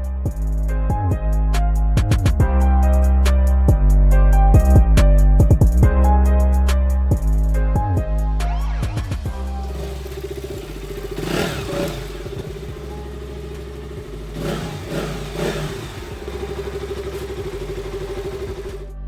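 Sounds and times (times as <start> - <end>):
motorcycle engine running: 9.4 - 19.0.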